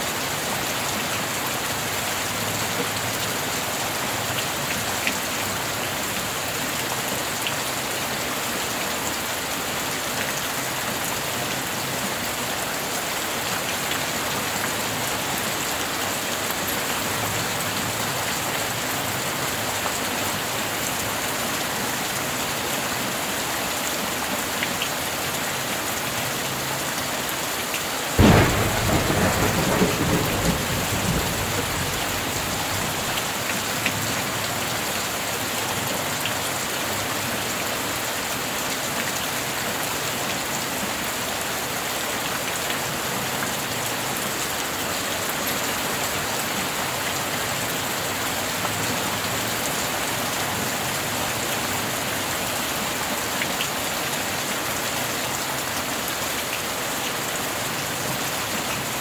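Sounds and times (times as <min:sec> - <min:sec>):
heavy rain falling: 0:00.1 - 0:59.0
thunderclap rumbling: 0:28.2 - 0:33.5.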